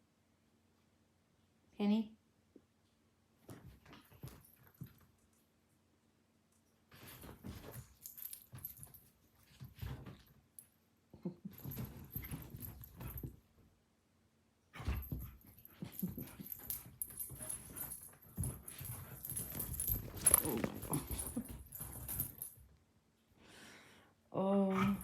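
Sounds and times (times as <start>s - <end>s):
dogs scuffling and thumping: 3.4s - 5.1s, 6.9s - 10.6s, 11.5s - 13.5s, 14.8s - 22.7s, 24.8s - 25.0s
collar tags jingling: 6.9s - 10.2s, 11.5s - 13.3s, 14.8s - 22.7s.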